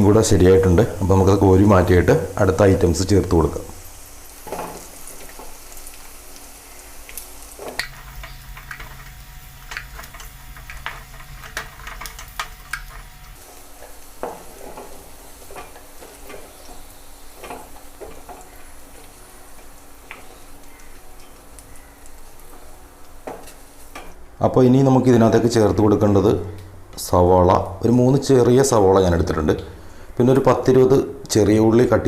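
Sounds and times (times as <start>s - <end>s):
prawns sizzling in oil: 0.0s - 24.2s.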